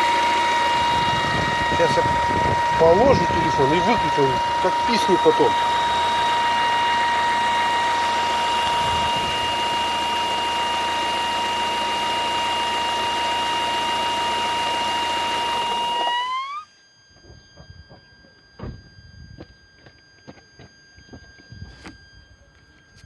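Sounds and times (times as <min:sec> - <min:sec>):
car engine whistling: 0:00.0 - 0:20.4
faint high squeal: 0:15.7 - 0:23.0.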